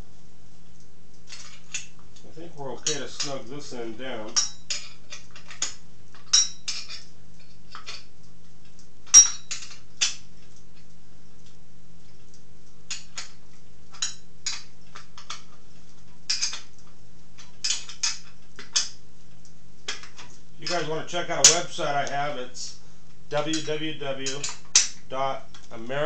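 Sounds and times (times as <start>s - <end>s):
wrench clinking on metal: 2.8s - 3.4s, 4.3s - 7.1s, 9.1s - 10.2s, 16.3s - 16.7s, 17.6s - 18.9s.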